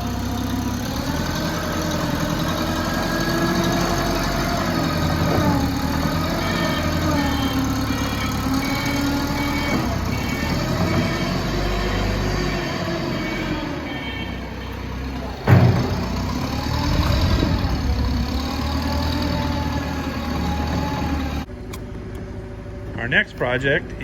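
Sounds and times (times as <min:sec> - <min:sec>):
engine running with whine: 0:00.0 - 0:23.0.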